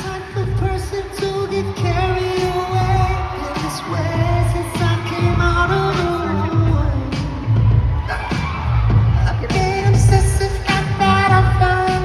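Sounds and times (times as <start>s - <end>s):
person singing: 0.0s - 7.5s, 9.2s - 12.0s
heavy repeating bass beat: 0.0s - 12.0s.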